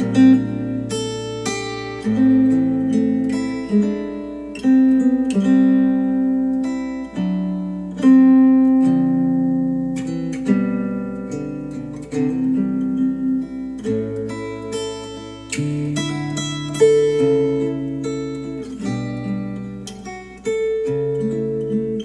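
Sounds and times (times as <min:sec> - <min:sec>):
acoustic guitar music: 0:00.0 - 0:22.0.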